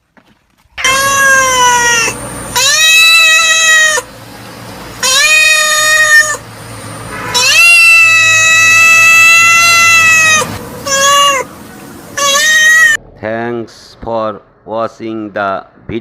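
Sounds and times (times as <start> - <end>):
cat meowing loudly: 0.8 - 4.1, 5.0 - 6.4, 7.2 - 11.5, 12.2 - 13.0.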